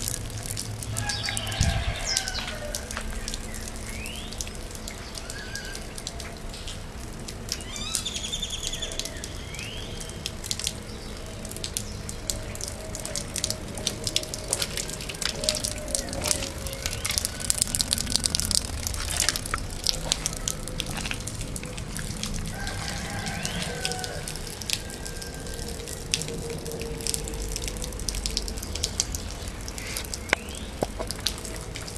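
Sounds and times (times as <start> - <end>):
water splashing and dripping: 0.0 - 31.9.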